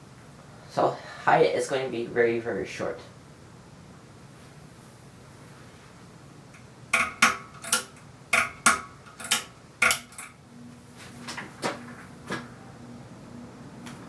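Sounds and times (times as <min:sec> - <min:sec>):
faint fan motor hum: 0:00.0 - 0:14.0
ceiling fan metallic clinks: 0:07.0 - 0:10.4.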